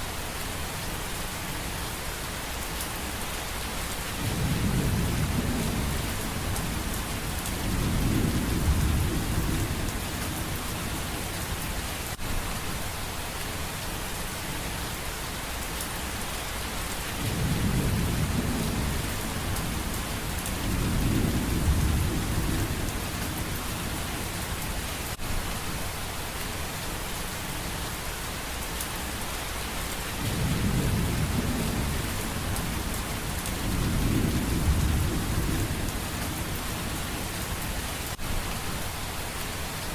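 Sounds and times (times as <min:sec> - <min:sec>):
heavy rain: 0:00.0 - 0:39.9
thunder rumbling: 0:17.2 - 0:24.3, 0:30.2 - 0:37.0.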